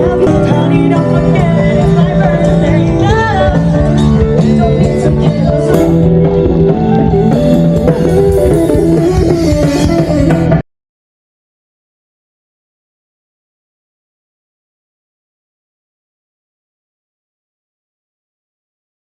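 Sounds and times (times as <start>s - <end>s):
bass line: 0.0s - 10.6s
guitar: 0.0s - 10.6s
person singing: 0.0s - 10.6s.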